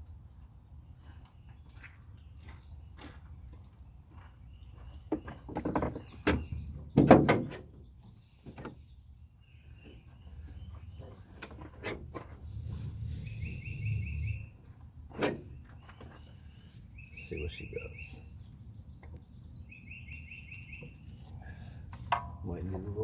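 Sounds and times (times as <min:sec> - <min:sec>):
birds chirping: 0:00.0 - 0:23.0
tools clunking and rattling: 0:05.0 - 0:08.8, 0:15.1 - 0:16.4, 0:21.9 - 0:22.9.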